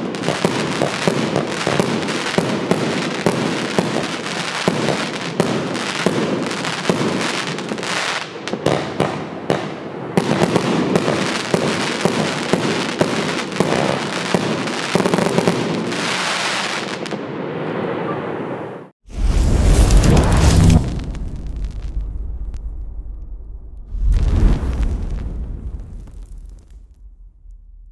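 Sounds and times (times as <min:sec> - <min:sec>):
fireworks shots and bursts: 0:00.0 - 0:17.8.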